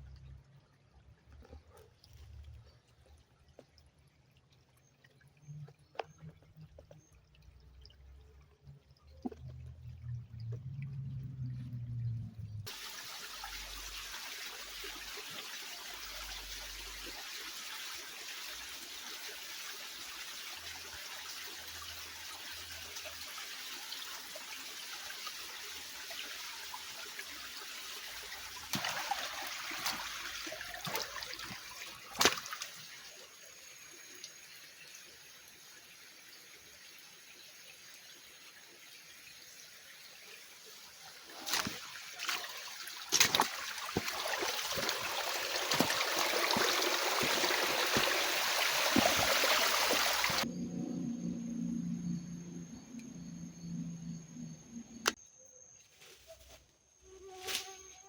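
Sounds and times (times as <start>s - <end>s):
stream running over rocks: 12.7s - 50.5s
splashes and knocks: 28.6s - 32.9s, 41.3s - 50.4s.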